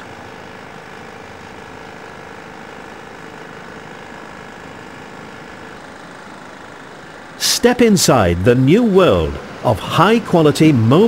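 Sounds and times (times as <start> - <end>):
constant hum: 2.7 - 11.0.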